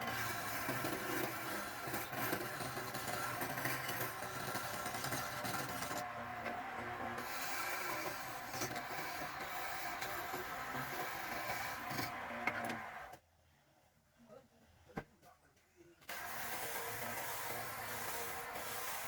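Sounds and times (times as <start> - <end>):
tool scraping wood: 0.0 - 13.0.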